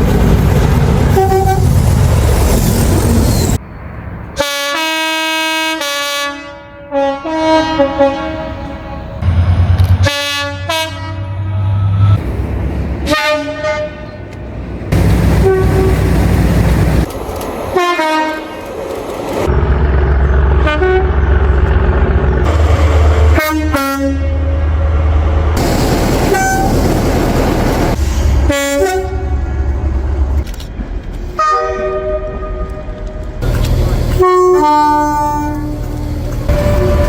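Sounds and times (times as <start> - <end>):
rumble of passing trains: 0.0 - 37.0
train horns blasting: 1.1 - 1.8, 4.4 - 12.2, 13.0 - 14.2, 15.0 - 16.3, 17.8 - 18.6, 20.6 - 21.3, 22.5 - 25.0, 26.2 - 26.8, 28.4 - 29.6, 31.4 - 37.0.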